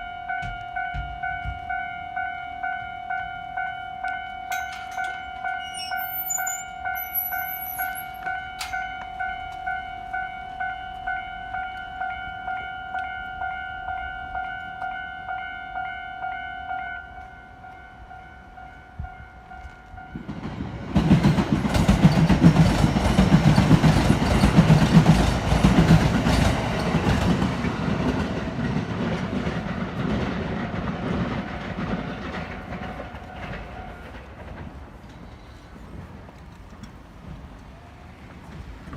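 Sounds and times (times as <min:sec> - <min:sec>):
level-crossing warning bell: 0:00.0 - 0:20.5, 0:30.8 - 0:34.5
train wheels clattering over rail joints: 0:20.2 - 0:37.7.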